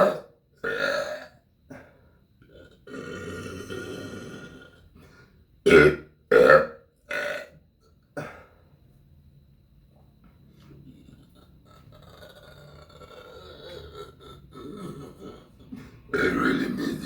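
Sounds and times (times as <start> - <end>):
person burping: 0.0 - 4.8, 5.6 - 7.6, 8.2 - 8.5, 11.0 - 17.0.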